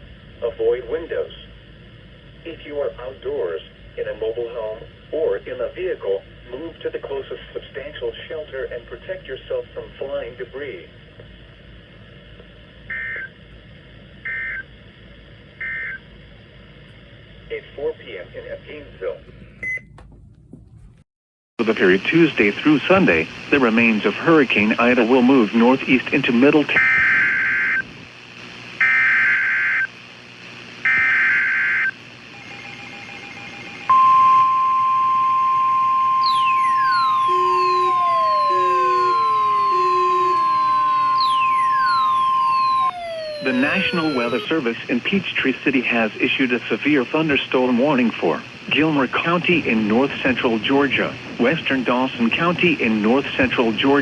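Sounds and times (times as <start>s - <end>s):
radio receiver hiss: 21.6s - 33.9s, 36.2s - 54.0s
steady warning alarm tone: 30.8s - 44.6s
short beeps: 33.9s - 44.5s
electronic data bursts: 36.0s - 44.7s
falling siren-like sweeps: 36.2s - 44.5s.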